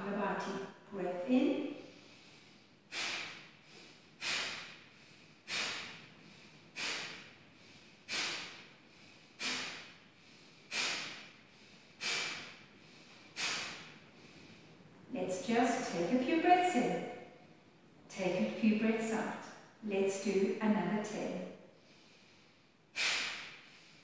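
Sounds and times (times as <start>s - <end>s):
quiet inhalations: 1.7s - 15.1s, 21.6s - 24.0s
woman forcefully exhaling through nose: 2.0s - 7.3s, 8.1s - 8.6s, 9.3s - 13.9s, 23.0s - 24.0s.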